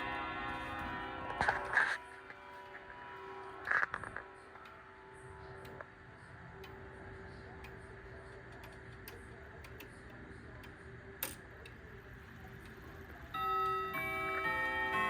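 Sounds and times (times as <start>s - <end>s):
clock chime ringing: 0.0s - 5.8s, 13.1s - 15.0s
clock ticking: 2.9s - 15.0s.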